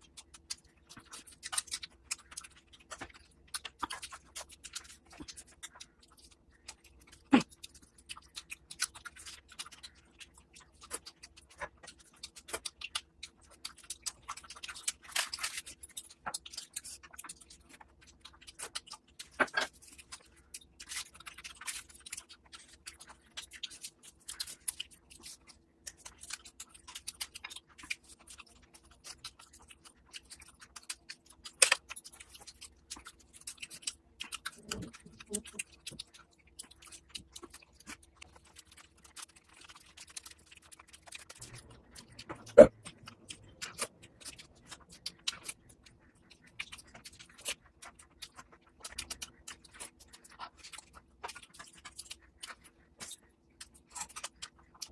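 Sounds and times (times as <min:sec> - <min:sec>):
wet chewing and food handling: 0:00.0 - 0:54.9.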